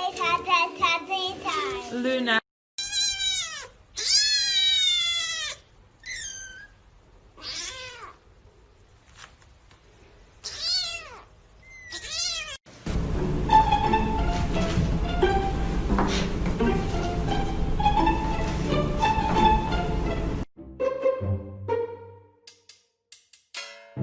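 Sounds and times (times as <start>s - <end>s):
cat meowing: 2.8s - 8.2s, 10.4s - 12.6s
plucked string music: 12.9s - 22.4s.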